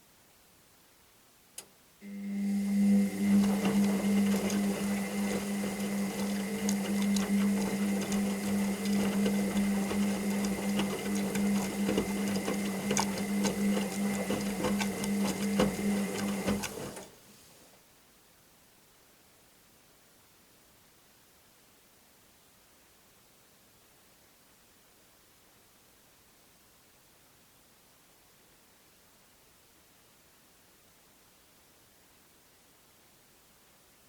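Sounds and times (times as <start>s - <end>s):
washing machine drum motor humming: 2.0s - 17.2s.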